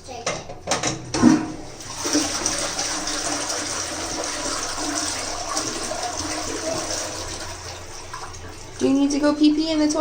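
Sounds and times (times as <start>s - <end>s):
running water: 1.6s - 10.0s.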